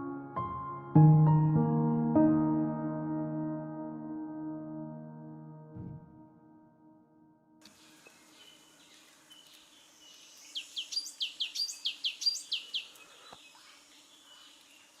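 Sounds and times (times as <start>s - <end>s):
ambient music: 0.0s - 7.6s
faint outdoor background noise: 7.6s - 15.0s
songbird singing high notes: 7.8s - 12.9s.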